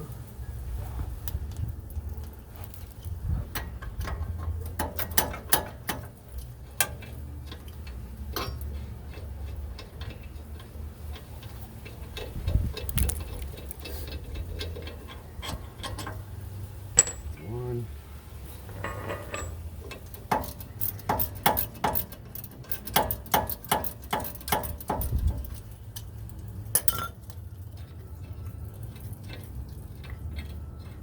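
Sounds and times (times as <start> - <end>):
hand ratchet clicking: 20.0 - 25.6.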